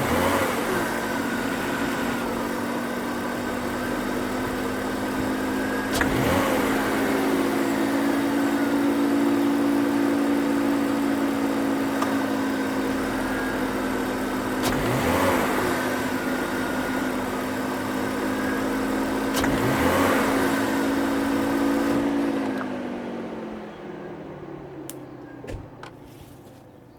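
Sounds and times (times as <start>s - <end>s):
car engine idling: 0.0s - 26.2s
engine throttle blips: 0.0s - 26.9s.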